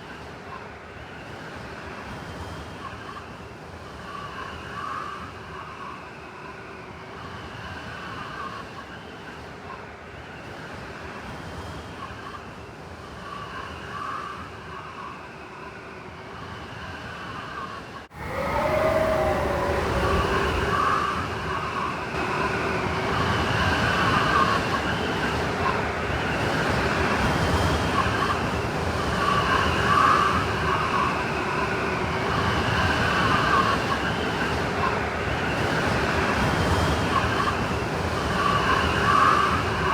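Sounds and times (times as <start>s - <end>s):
blizzard wind howling: 13.2s - 39.9s.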